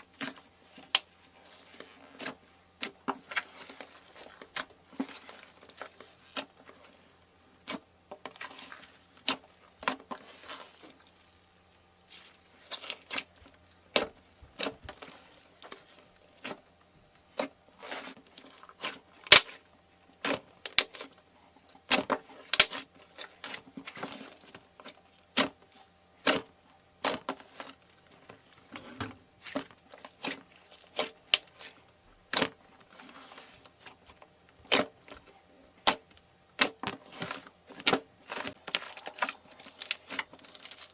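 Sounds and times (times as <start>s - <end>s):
crunchy things crushed by hand: 17.3s - 40.9s.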